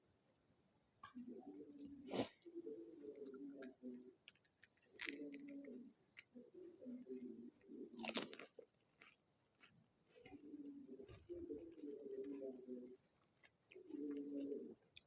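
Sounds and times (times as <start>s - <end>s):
wet chewing clicks: 3.2s - 5.6s, 7.9s - 15.0s
person chewing crunchy food: 3.6s - 5.5s, 7.9s - 15.0s.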